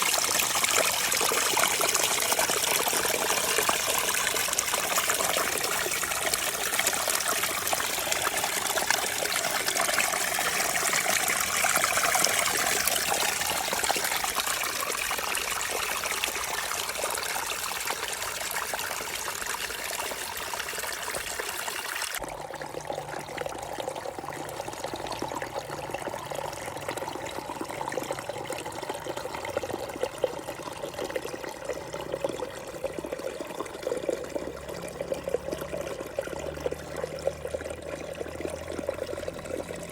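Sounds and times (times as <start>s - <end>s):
small waterfall splashing: 0.0s - 22.3s.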